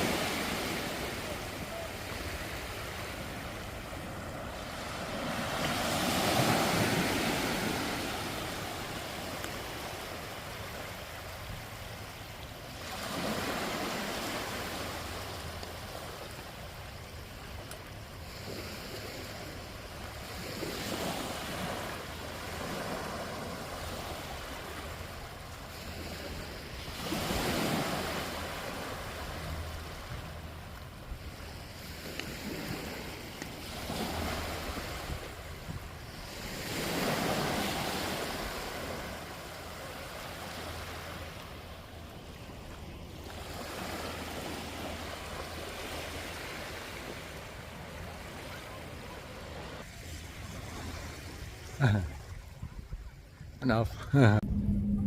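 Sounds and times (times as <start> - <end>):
waves breaking on beach: 0.0 - 54.4
wind noise on microphone: 52.2 - 53.6, 54.3 - 55.0.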